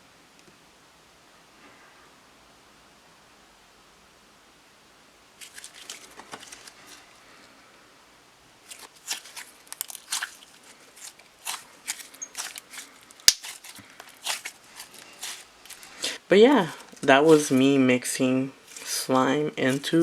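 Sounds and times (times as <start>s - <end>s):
slime squished by hand: 8.7s - 16.1s
sharp snap: 13.2s - 13.5s.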